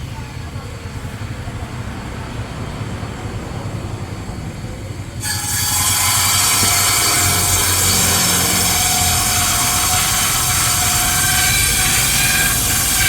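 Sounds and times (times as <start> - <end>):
woodworking machine humming: 4.6 - 13.0
blade cutting wood: 5.2 - 13.0.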